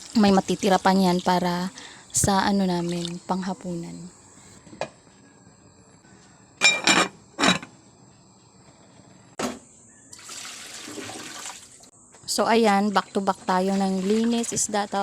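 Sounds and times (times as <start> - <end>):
tap water running: 2.7 - 3.3, 10.2 - 11.8, 13.7 - 14.7
kitchenware clattering: 6.6 - 7.7.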